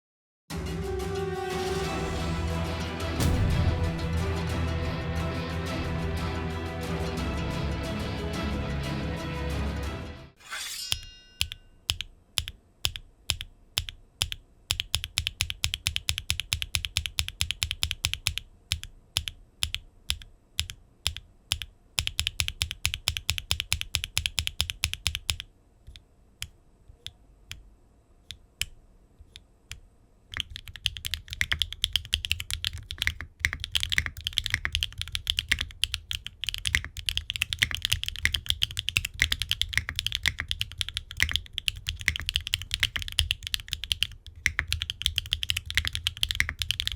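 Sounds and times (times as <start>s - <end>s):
mechanical keyboard typing: 11.9s - 25.5s, 30.3s - 46.9s.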